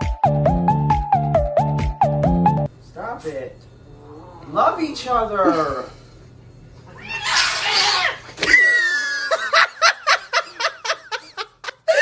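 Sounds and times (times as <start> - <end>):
person laughing: 8.4 - 12.0.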